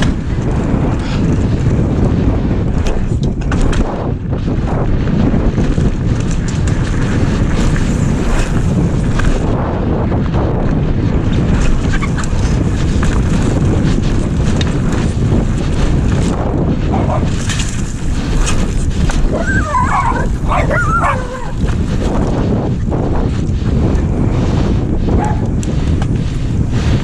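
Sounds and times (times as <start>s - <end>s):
strong wind buffeting microphone: 0.0s - 27.0s
high wavering cries: 19.3s - 21.6s.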